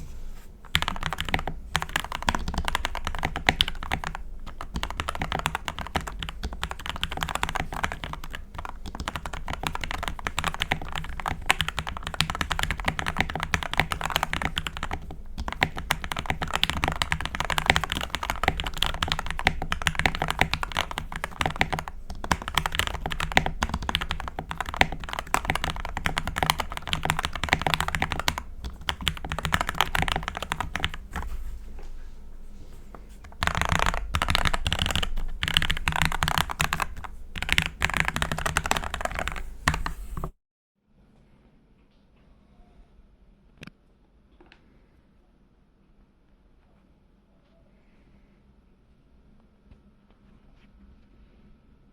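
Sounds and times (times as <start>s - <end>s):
typing on mechanical keyboard: 0.7s - 31.3s, 33.2s - 40.4s.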